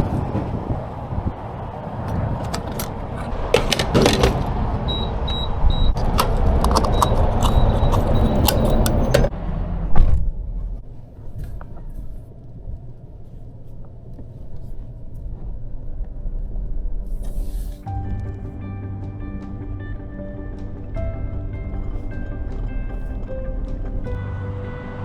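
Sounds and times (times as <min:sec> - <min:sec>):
low steady rumble: 0:00.0 - 0:25.0
rustling and clattering: 0:02.0 - 0:04.7
high repeated electronic beep: 0:06.9 - 0:09.3.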